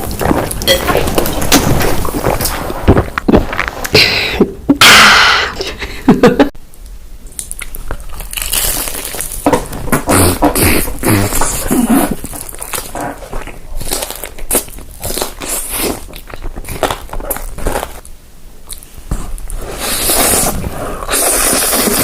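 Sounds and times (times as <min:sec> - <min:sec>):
food crunching and chewing: 0:07.2 - 0:22.0.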